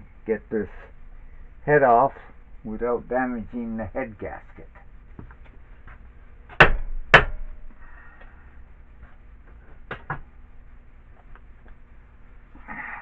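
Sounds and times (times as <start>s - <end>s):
sharp knocks on metal: 6.5s - 7.6s.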